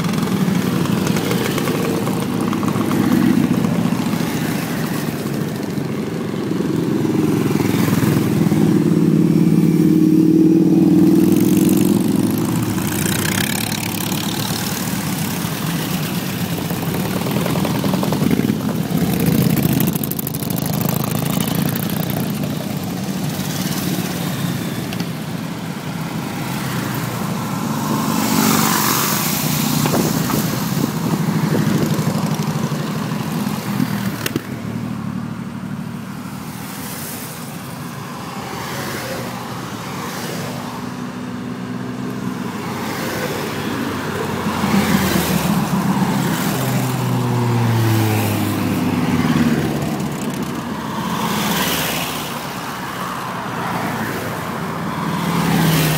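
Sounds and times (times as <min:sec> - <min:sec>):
vehicles driving by: 0:00.0 - 0:55.9.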